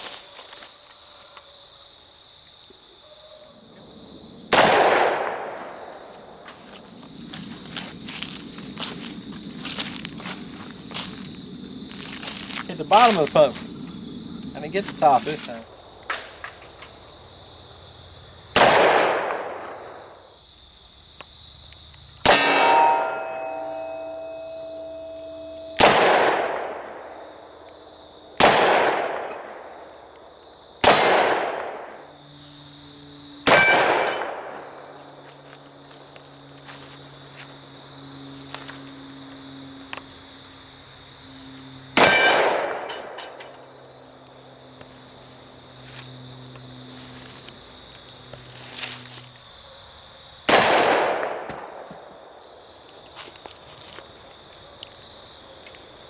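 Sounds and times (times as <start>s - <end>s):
revolver gunshot with echo: 4.5s - 5.6s, 18.6s - 19.7s, 25.7s - 26.8s, 28.4s - 29.3s, 50.5s - 51.8s
steel targets clanging: 22.3s - 25.9s, 33.5s - 34.4s, 42.0s - 43.5s
faint steady high tone: 22.5s - 25.8s.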